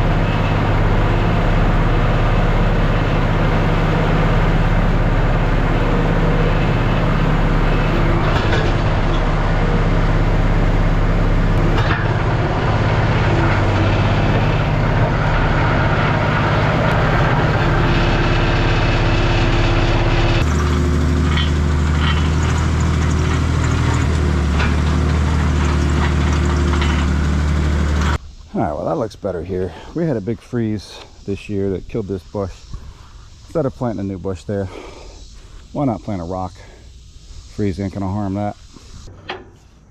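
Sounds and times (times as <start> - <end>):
skid steer engine running: 0.0 - 29.0.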